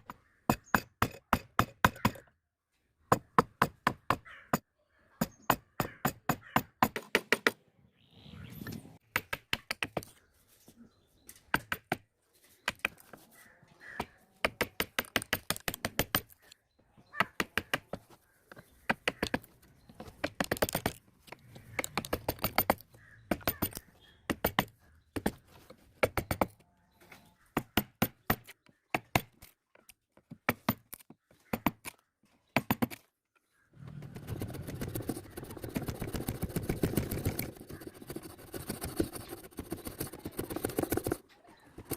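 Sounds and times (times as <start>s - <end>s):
wood chisel tapping: 17.2s - 25.4s
chisel scraping wood: 33.8s - 41.9s.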